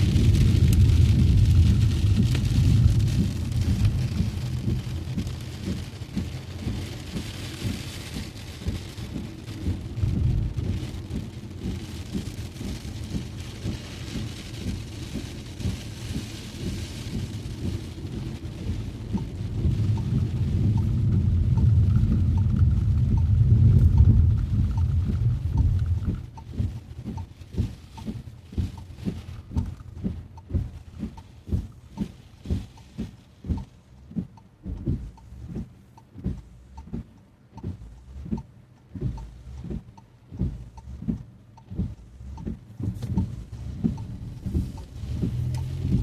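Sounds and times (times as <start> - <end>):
heavy rain hissing: 0.0 - 27.0, 43.3 - 46.0
car driving on wet streets: 0.0 - 46.0
faint regular ticks: 0.3 - 46.0.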